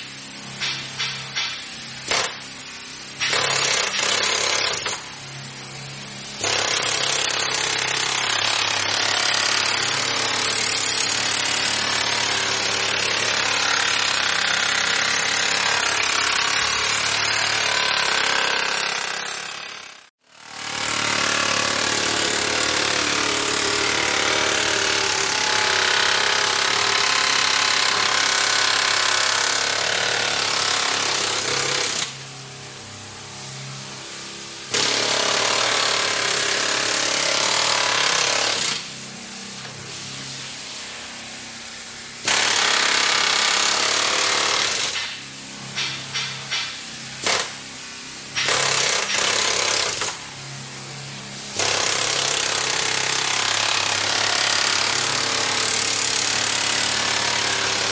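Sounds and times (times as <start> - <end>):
power tools running: 0.0 - 57.9.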